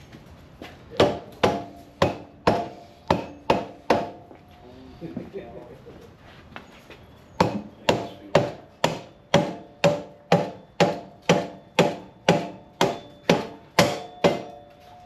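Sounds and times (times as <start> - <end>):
hammer strikes on metal: 0.9 - 4.4, 7.4 - 14.8.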